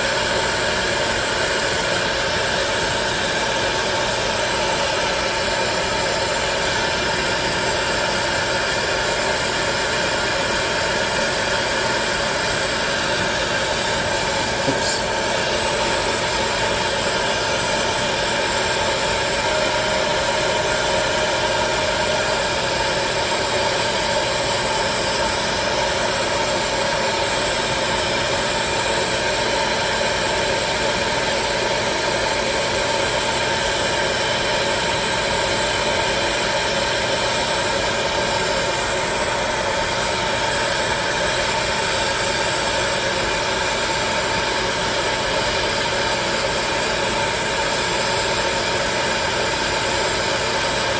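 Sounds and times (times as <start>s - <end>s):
motor whine: 0.0s - 50.9s
rush of blown air: 14.2s - 16.0s.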